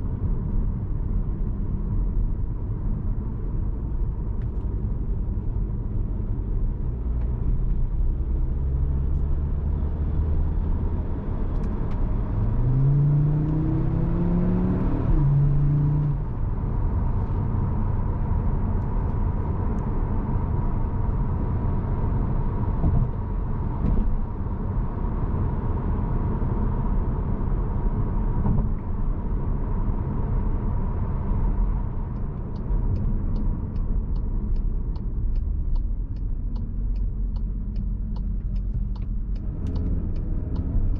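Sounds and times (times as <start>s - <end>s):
road rumble: 0.0s - 40.9s
car engine accelerating: 6.9s - 21.6s, 30.8s - 40.9s
even ticks: 32.1s - 40.9s.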